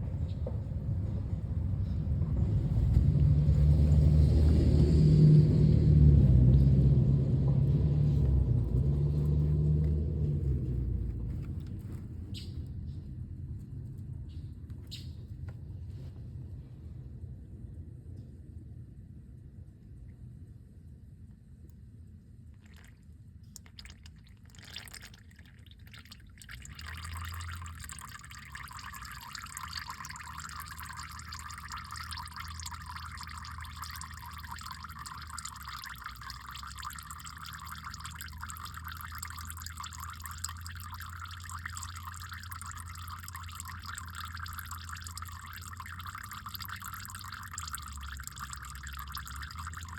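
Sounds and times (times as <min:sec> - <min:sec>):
liquid pouring into a container: 0:02.8 - 0:05.7, 0:22.5 - 0:49.9.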